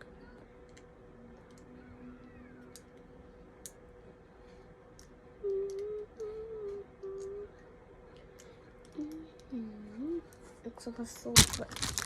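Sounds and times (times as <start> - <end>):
girl humming: 5.4 - 7.6, 8.9 - 10.2.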